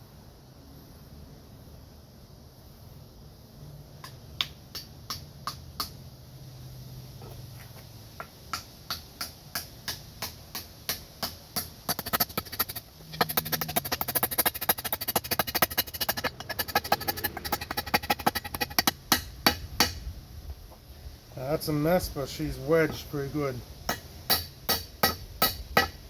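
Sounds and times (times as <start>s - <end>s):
hammer striking wooden wedge: 8.2s - 20.0s, 23.9s - 26.0s.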